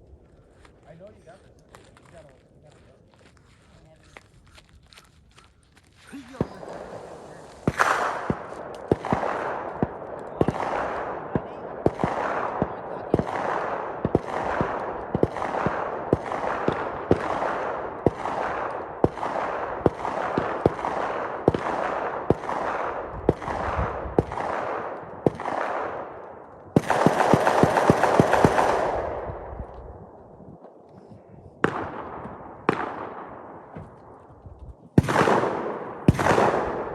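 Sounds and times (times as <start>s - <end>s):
rifle shots with echo: 6.2s - 30.4s, 31.6s - 34.2s, 34.9s - 36.9s.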